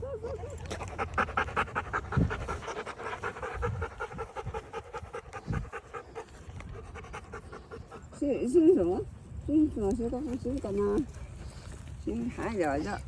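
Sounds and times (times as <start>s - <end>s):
dog panting: 0.2s - 9.0s.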